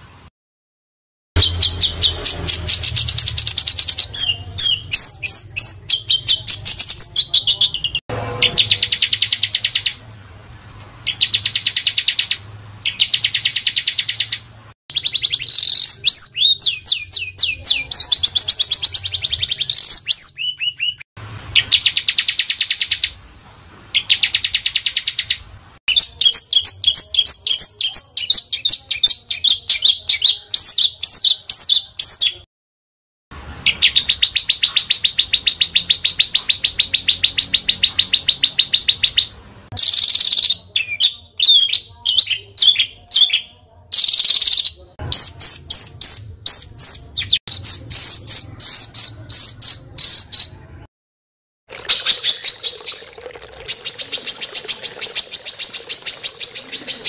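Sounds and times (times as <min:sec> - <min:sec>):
songbirds chattering: 0:01.4 - 0:10.0, 0:11.0 - 0:21.0, 0:51.7 - 0:57.0
songbirds trilling: 0:01.4 - 0:10.0, 0:11.0 - 0:23.2, 0:51.7 - 0:57.0.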